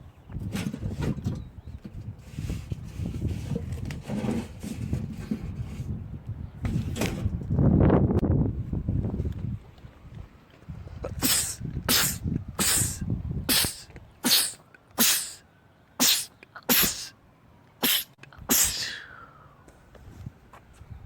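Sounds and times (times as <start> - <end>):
man sneezing: 11.2 - 15.4, 16.0 - 17.1, 17.8 - 19.2.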